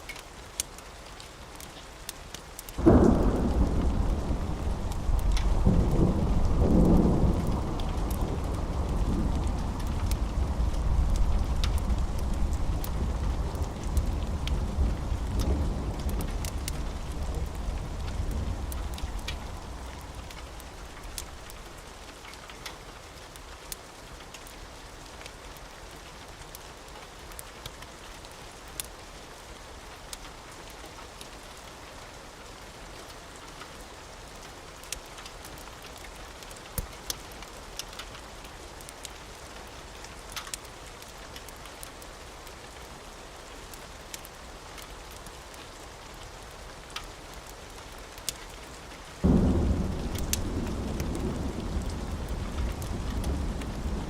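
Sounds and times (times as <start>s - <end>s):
wood fire crackling and popping: 0.0s - 24.6s, 27.0s - 29.0s, 34.8s - 39.2s, 39.8s - 42.8s, 44.0s - 54.0s
steady rain: 0.0s - 54.0s
thunder rumble: 2.8s - 21.7s, 49.2s - 54.0s.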